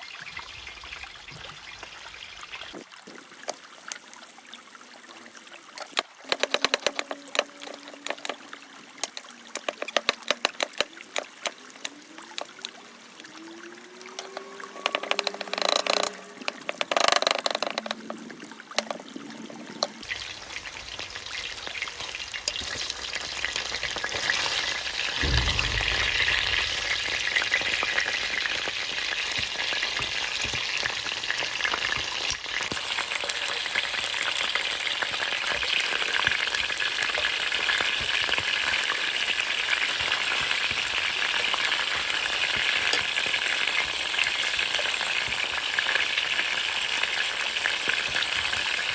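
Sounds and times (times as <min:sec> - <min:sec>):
knocks and clinks: 0:05.8 - 0:11.6
food sizzling in a pan: 0:19.9 - 0:48.9.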